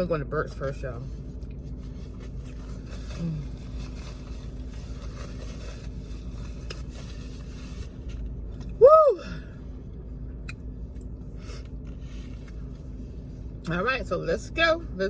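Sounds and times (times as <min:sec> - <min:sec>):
low steady hum: 0:00.0 - 0:15.0
faint scraping and handling noises: 0:00.5 - 0:08.3, 0:11.4 - 0:13.6
woman shouting woo: 0:08.8 - 0:09.4.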